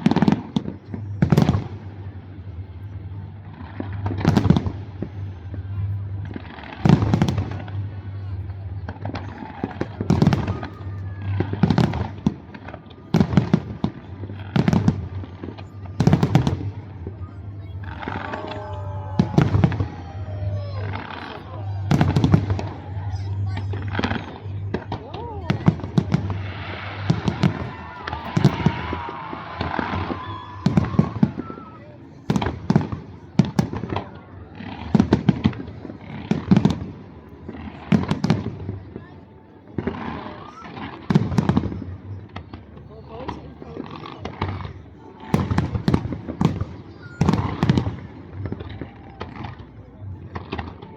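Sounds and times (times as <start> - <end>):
fireworks booming: 0.0 - 39.0, 43.7 - 49.7
fireworks crackling: 0.0 - 50.9
low rumble: 13.6 - 31.4.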